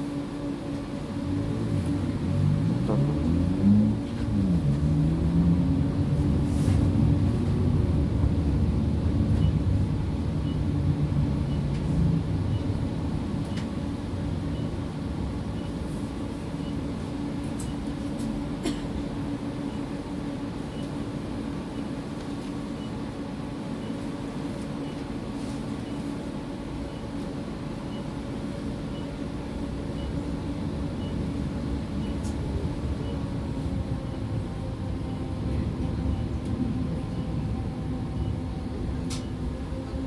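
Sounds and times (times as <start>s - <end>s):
tram traction drive hum: 0.2s - 17.6s, 28.9s - 40.0s.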